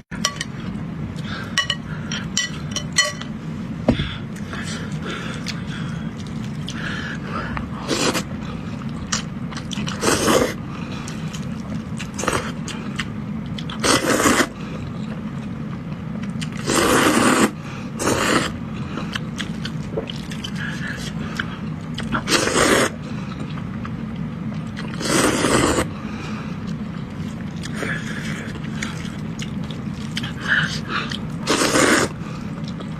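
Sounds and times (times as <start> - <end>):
noodles slurped: 16.5 - 18.6, 22.0 - 23.0, 24.8 - 25.9, 27.3 - 32.8.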